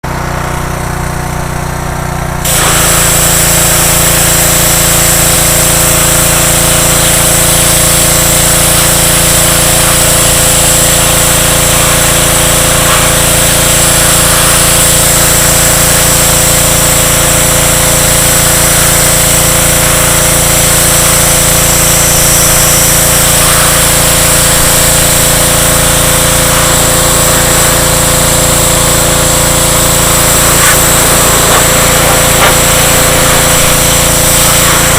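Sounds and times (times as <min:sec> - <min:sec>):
pressure washer running: 0:00.0 - 0:34.9
strong hiss: 0:30.1 - 0:34.9.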